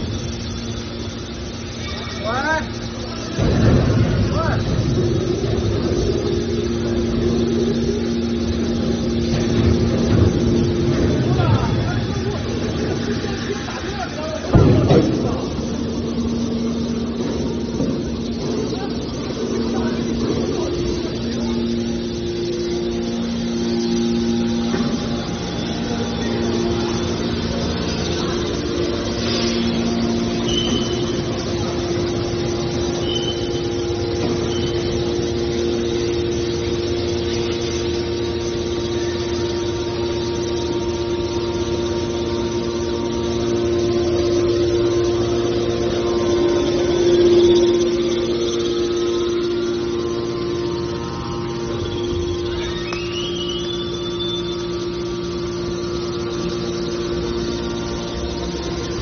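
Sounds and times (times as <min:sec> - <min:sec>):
hydraulic power unit humming: 0:00.0 - 0:59.0
high squeaks: 0:18.2 - 0:41.5, 0:42.8 - 0:55.6.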